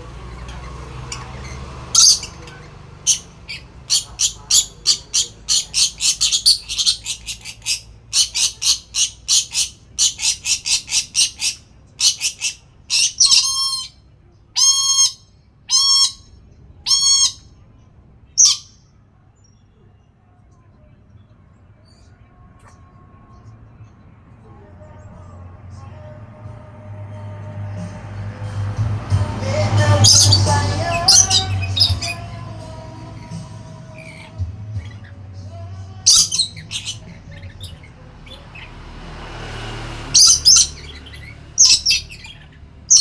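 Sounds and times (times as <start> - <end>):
parrot chirping and calling: 0.0 - 14.0, 14.6 - 16.3, 16.9 - 17.4, 18.4 - 18.8, 29.6 - 35.2, 36.0 - 43.0.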